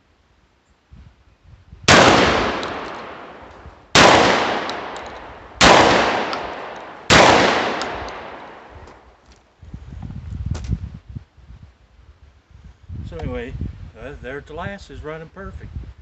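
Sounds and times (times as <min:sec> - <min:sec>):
shotgun action cycling: 0:01.9 - 0:03.4, 0:04.0 - 0:08.6
shotgun shots: 0:01.9 - 0:08.8.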